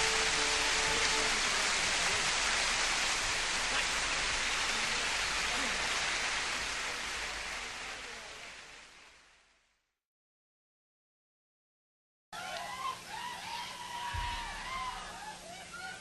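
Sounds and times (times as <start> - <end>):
band holding last notes: 0.0 - 3.1
audience applauding and cheering: 0.0 - 9.0, 12.5 - 16.0.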